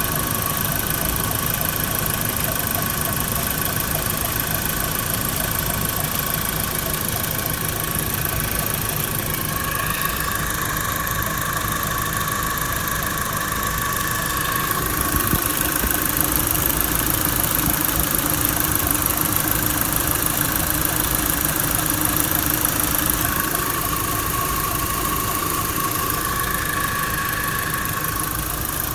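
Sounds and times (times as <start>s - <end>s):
car engine running: 0.0s - 28.9s
thin whistle: 9.2s - 28.9s.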